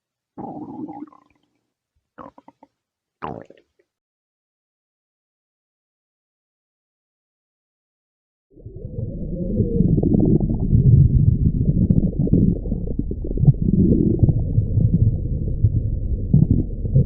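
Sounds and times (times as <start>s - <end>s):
stomach growling: 0.4s - 1.4s, 2.2s - 3.9s, 8.6s - 17.0s.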